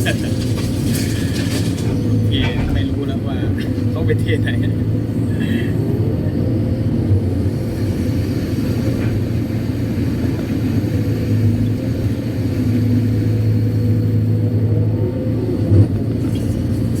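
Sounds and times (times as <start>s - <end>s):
excavator diesel engine running: 0.0s - 17.0s.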